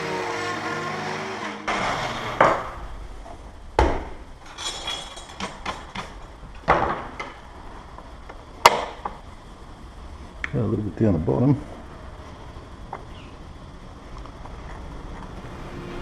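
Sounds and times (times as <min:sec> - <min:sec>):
background music: 0:00.0 - 0:03.0, 0:15.3 - 0:16.0.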